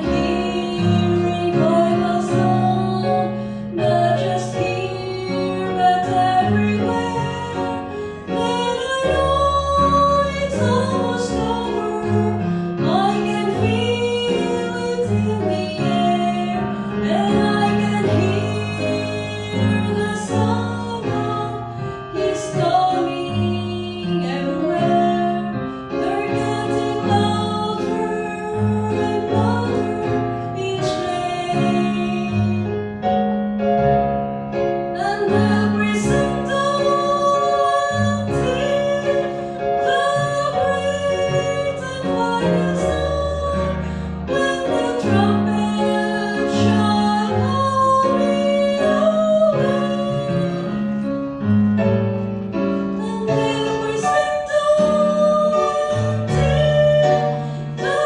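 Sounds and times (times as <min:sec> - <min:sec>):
keyboard accompaniment: 0:00.0 - 0:58.0
woman singing gospel: 0:35.0 - 0:50.6, 0:53.0 - 0:58.0.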